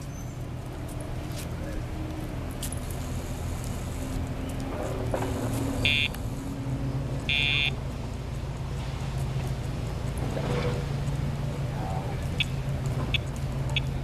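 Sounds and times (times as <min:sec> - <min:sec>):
low engine drone: 0:00.7 - 0:14.0
short electronic beeps: 0:05.8 - 0:06.2, 0:07.3 - 0:07.8.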